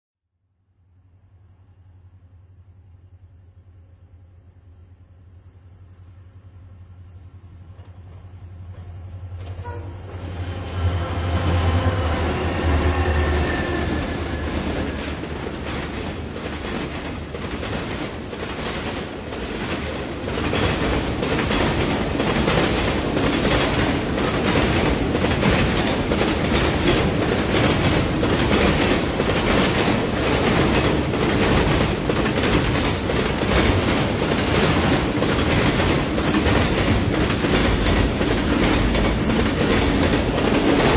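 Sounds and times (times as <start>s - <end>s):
diesel train engine drone: 1.3s - 40.9s
train wheels clacking over rail joints: 10.6s - 40.9s.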